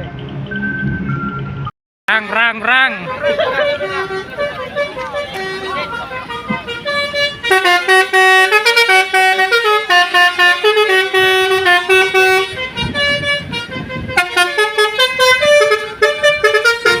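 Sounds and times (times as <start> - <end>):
low engine rumble: 0.0 - 17.0
melodic bus horns: 0.5 - 17.0.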